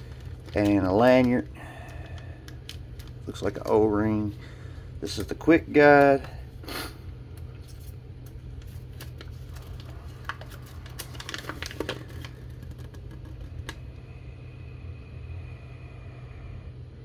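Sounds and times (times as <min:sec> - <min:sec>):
packaging rustling: 0:00.0 - 0:03.7, 0:08.5 - 0:13.8
steady low hum: 0:00.0 - 0:17.0.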